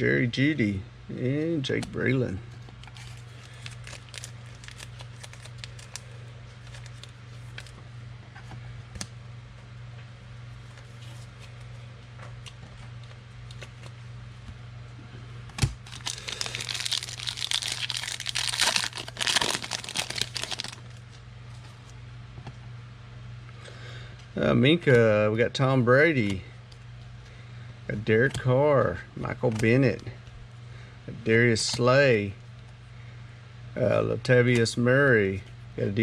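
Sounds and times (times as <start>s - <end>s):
low steady hum: 0.0s - 36.0s
wrapper tearing and crinkling: 2.8s - 7.7s, 15.8s - 21.1s.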